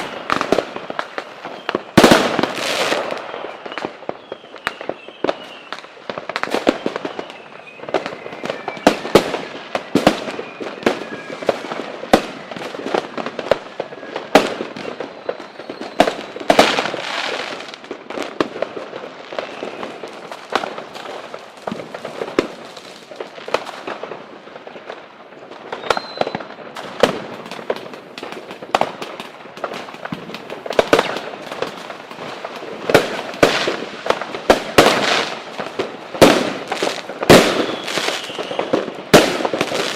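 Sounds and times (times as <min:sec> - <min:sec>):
fireworks bangs and crackles: 0:00.0 - 0:39.9
faint falling whistle: 0:03.4 - 0:05.8, 0:06.6 - 0:09.2, 0:15.2 - 0:16.2, 0:25.8 - 0:26.5, 0:37.6 - 0:38.8.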